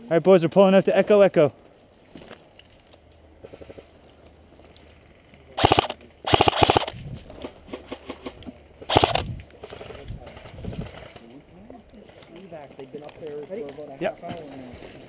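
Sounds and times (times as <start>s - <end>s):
airsoft rifle firing bursts: 5.6s - 7.0s, 8.8s - 9.9s.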